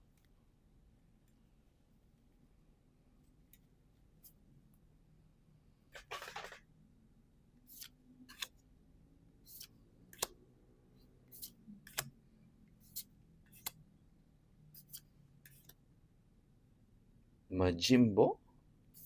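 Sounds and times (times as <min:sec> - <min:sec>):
cards snapping off stack: 0:07.8 - 0:08.5, 0:13.5 - 0:13.8.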